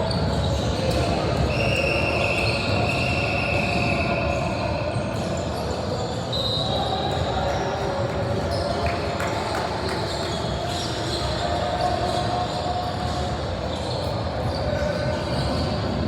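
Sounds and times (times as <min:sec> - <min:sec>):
echoing crowd chatter: 0:00.0 - 0:16.0.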